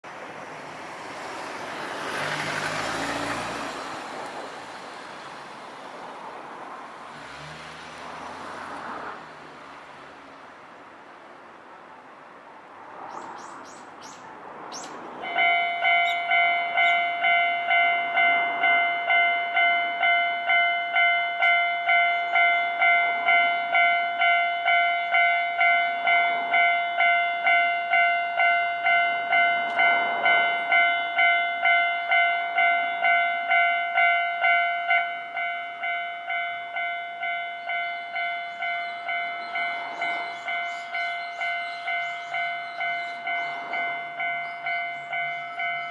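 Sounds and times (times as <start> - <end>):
level-crossing warning bell: 15.2 - 45.9.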